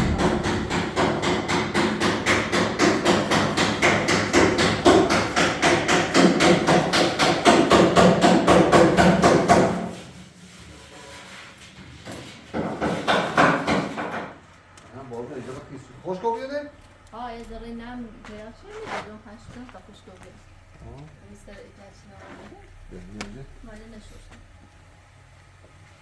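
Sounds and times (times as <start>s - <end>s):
fast even knocking: 0.0s - 6.3s.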